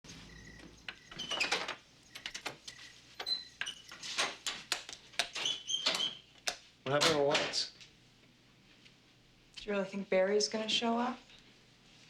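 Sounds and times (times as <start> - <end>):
short high squeaks: 0.1 - 4.2
sharp clicks and knocks: 0.6 - 7.2.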